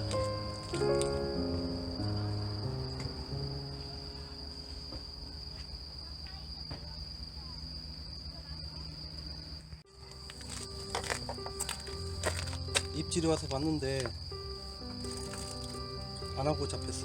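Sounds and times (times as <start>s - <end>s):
background music: 0.0s - 4.9s, 9.9s - 17.0s
crickets chirring: 0.0s - 17.0s.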